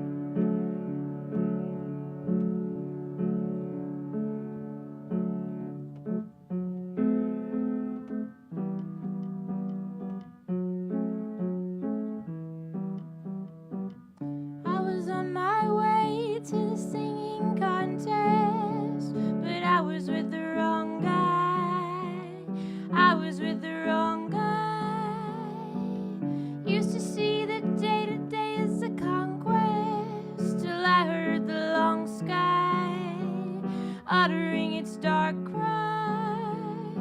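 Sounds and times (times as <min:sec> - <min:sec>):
woman singing: 0:14.6 - 0:37.0.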